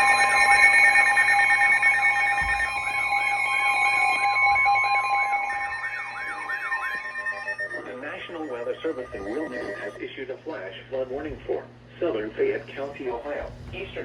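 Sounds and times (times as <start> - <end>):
warbling alert tone: 0.0 - 10.0
steady alarm tones: 0.0 - 10.1.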